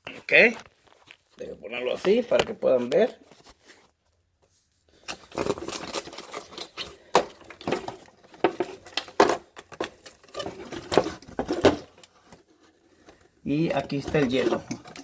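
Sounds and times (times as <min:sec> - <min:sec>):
plastic parts clicking and scraping: 0:05.0 - 0:15.0.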